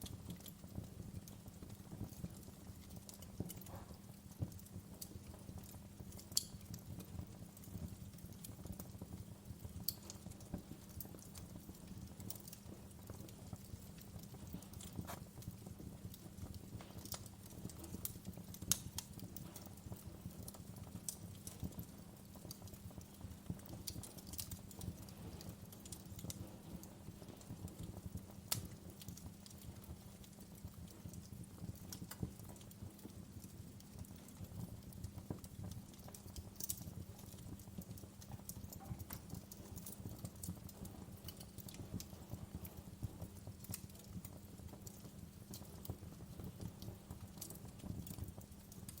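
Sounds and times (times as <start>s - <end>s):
wood fire crackling: 0.0s - 49.0s
sharp pops of burning logs: 6.1s - 6.8s, 12.3s - 21.8s.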